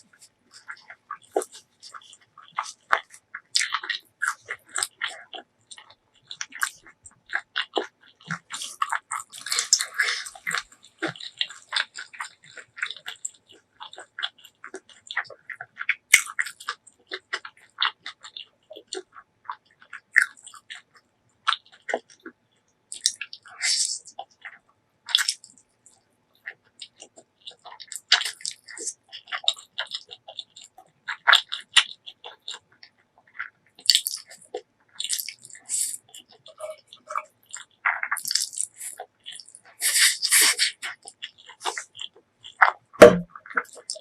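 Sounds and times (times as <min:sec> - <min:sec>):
person chewing and biting: 0:00.2 - 0:20.8, 0:26.7 - 0:32.8, 0:33.4 - 0:44.0.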